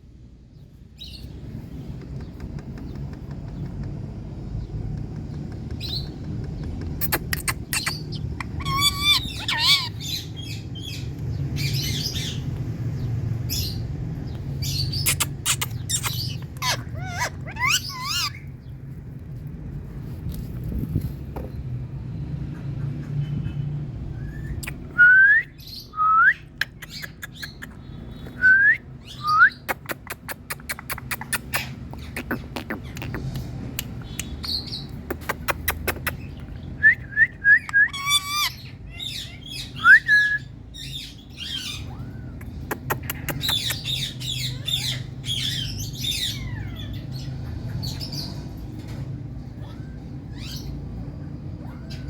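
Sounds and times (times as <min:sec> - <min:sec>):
parrot shrieking and chattering: 0:07.0 - 0:11.0, 0:14.6 - 0:18.6, 0:29.8 - 0:33.2, 0:37.7 - 0:48.0.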